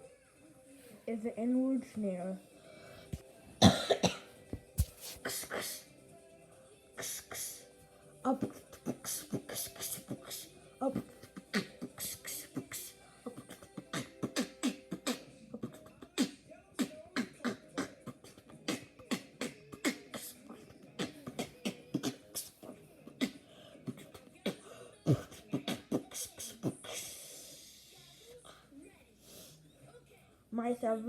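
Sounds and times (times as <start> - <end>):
beatboxing: 4.8 - 5.8, 7.0 - 7.6, 8.3 - 27.3.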